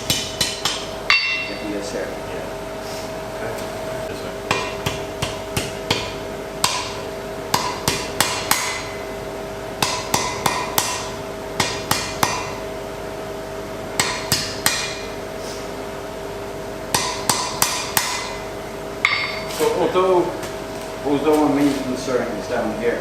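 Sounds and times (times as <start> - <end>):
hammer striking iron on anvil: 0.0 - 1.7, 4.5 - 9.1, 9.8 - 12.6, 14.0 - 15.2, 16.9 - 19.5.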